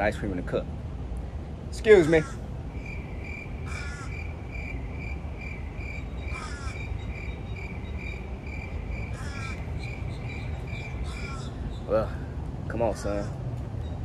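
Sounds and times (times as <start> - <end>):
low outdoor rumble: 0.0 - 14.0
bird cawing: 2.0 - 12.3.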